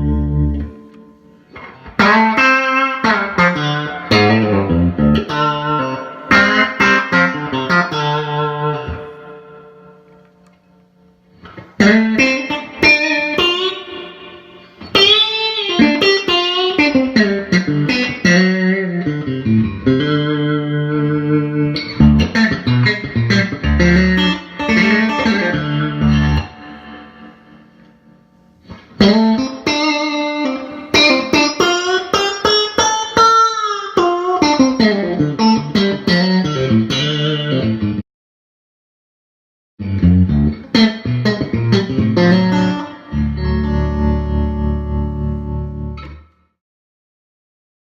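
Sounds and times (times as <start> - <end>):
clean electric guitar playing: 0.0 - 38.0, 39.8 - 46.4.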